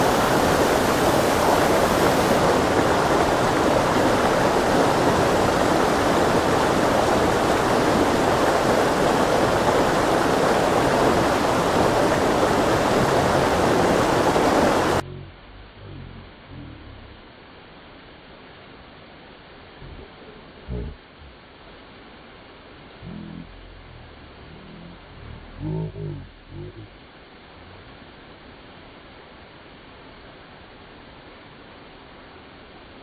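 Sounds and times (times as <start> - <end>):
waterfall rushing: 0.0 - 15.1.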